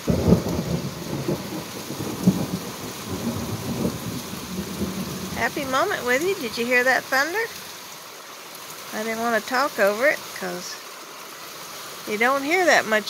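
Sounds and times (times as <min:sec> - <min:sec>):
thunder rumbling: 0:00.0 - 0:07.6
rain falling: 0:00.0 - 0:13.0.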